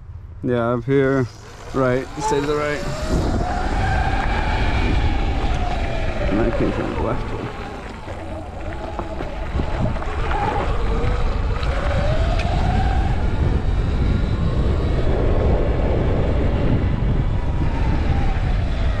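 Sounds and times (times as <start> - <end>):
wind buffeting microphone: 0.0 - 19.0
electric motorbike motor whining: 0.7 - 19.0.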